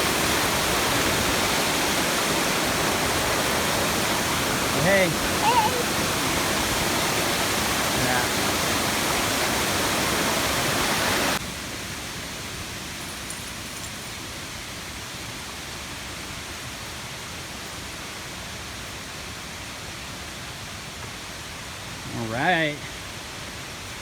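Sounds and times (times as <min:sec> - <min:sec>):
waterfall roaring: 0:00.0 - 0:18.5.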